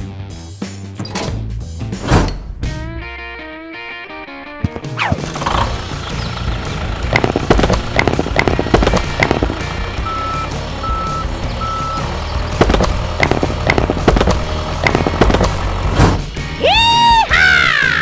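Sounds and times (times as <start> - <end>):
clattering knocks: 4.7 - 16.3
construction vehicle engine running: 4.9 - 16.6
reversing alarm beeps: 10.0 - 12.1.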